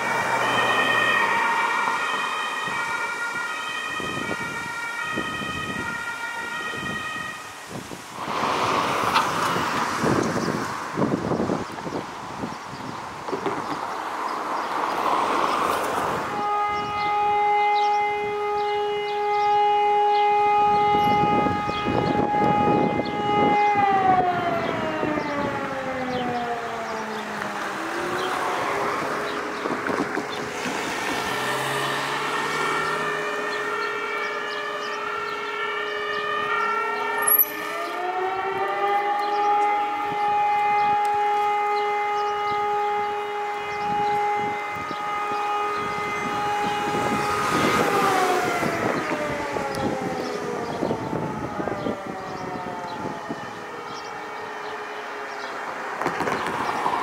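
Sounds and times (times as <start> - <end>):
alarm siren winding: 36.7 - 39.8.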